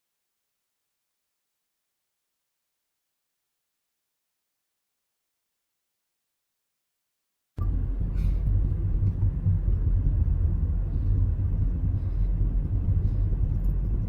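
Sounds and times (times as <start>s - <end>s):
car road and wind noise: 7.6s - 14.0s.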